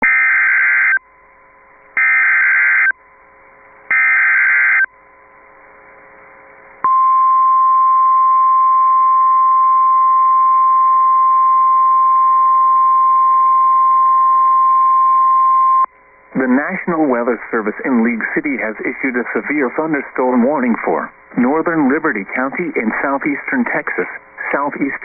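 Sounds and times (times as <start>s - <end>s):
radio static hiss: 16.3s - 25.0s.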